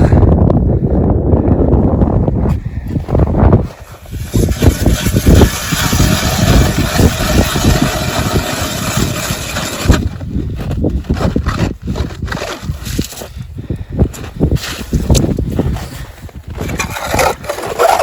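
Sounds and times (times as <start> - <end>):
wind buffeting microphone: 0.0 - 18.0
cordless drill turning ice auger: 4.2 - 10.2, 16.6 - 18.0.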